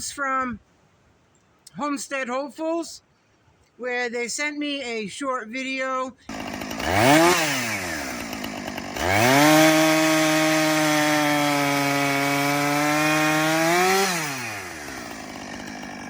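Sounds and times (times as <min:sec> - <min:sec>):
two-stroke chainsaw revving: 0:06.3 - 0:16.0.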